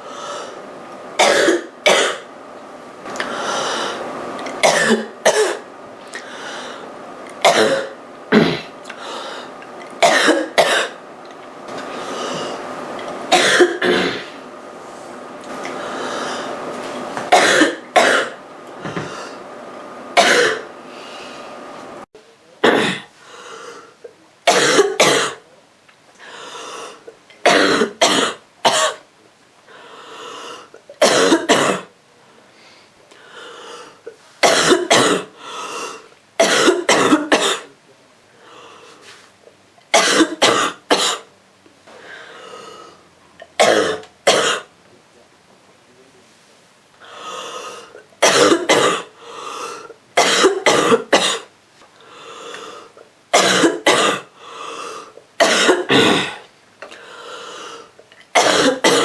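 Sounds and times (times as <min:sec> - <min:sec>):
girl coughing: 0:01.2 - 0:02.2, 0:04.6 - 0:05.6, 0:07.4 - 0:08.7, 0:10.0 - 0:11.0, 0:13.3 - 0:14.4, 0:17.3 - 0:19.1, 0:20.2 - 0:20.7, 0:31.0 - 0:31.9, 0:34.4 - 0:35.3, 0:40.0 - 0:41.2, 0:48.2 - 0:49.1, 0:50.2 - 0:51.5, 0:53.4 - 0:54.3, 0:55.4 - 0:56.4, 0:58.4 - 0:59.0.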